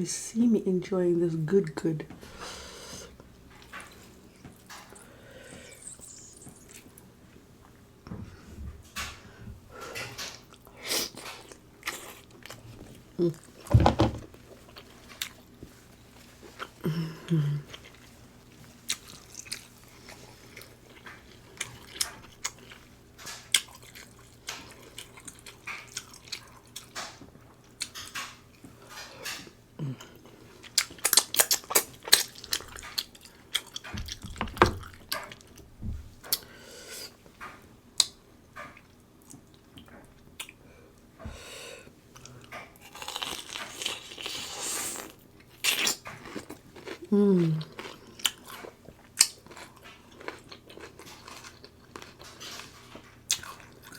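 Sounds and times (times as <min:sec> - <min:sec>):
chewing and wet mouth sounds: 0:03.1 - 0:07.1, 0:14.3 - 0:35.6, 0:42.1 - 0:53.9.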